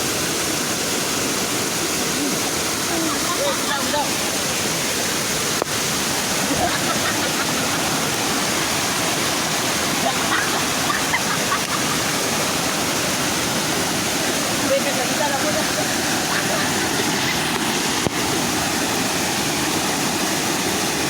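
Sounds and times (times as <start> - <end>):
waterfall roaring: 0.0 - 21.0.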